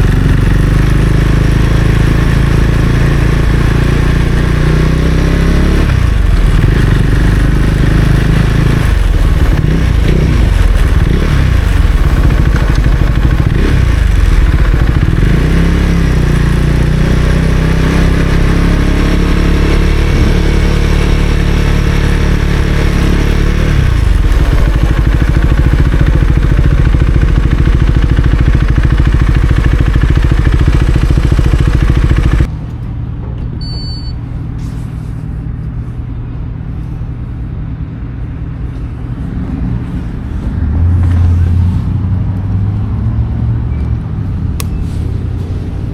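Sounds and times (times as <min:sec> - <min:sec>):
motorcycle engine revving: 0:00.0 - 0:32.6
low rumble: 0:08.8 - 0:15.4.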